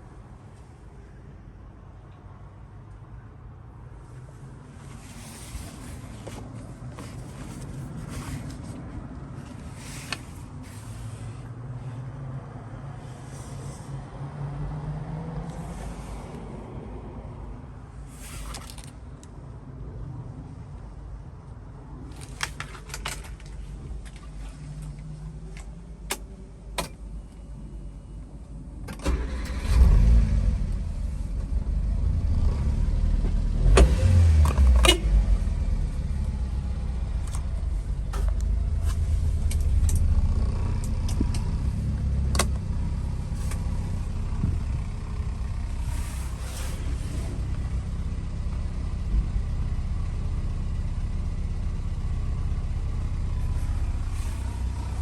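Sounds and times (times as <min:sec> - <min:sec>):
engine starting and revving: 0:29.0 - 0:35.7.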